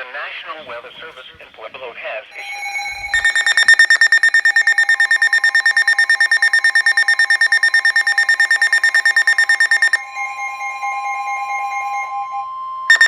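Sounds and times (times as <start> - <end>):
pulsing electronic alarm tone: 2.4 - 13.0
steady alert tones: 3.0 - 10.0.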